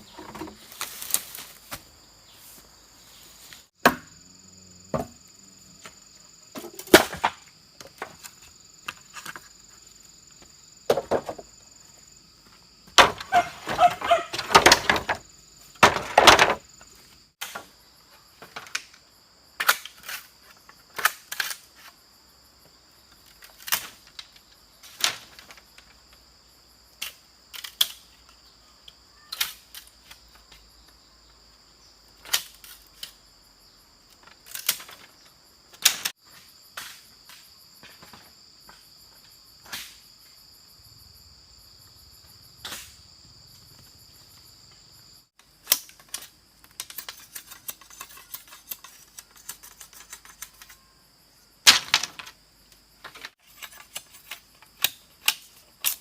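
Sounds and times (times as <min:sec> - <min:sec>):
insect chorus: 0:00.0 - 0:56.0
bamboo being chopped: 0:03.8 - 0:04.2, 0:04.9 - 0:05.2, 0:06.5 - 0:08.2.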